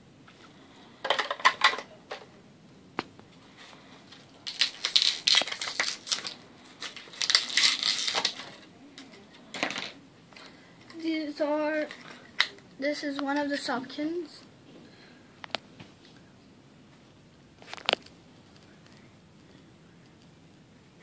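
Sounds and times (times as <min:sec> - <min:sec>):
plastic toy pieces clattering: 0:01.0 - 0:02.2, 0:04.5 - 0:10.0.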